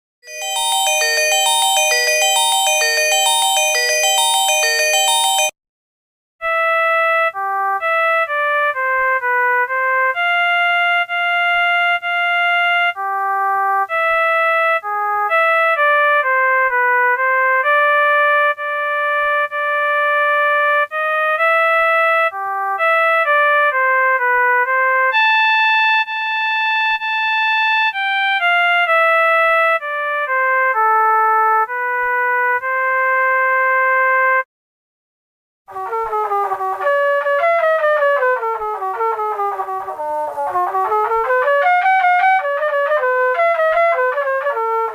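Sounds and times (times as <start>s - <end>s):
chiming ringtone: 0.2s - 5.6s
synthesized ringtone melody: 0.2s - 5.6s.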